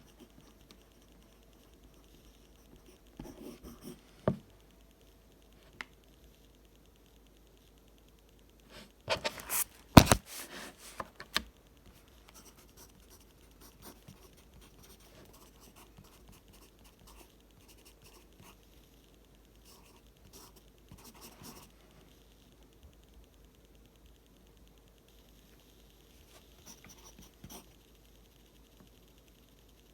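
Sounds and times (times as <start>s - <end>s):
pencil writing on paper: 0.0s - 4.0s.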